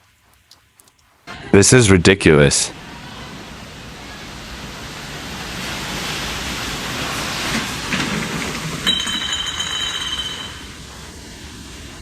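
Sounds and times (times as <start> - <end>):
rain and wind: 1.2 - 12.0.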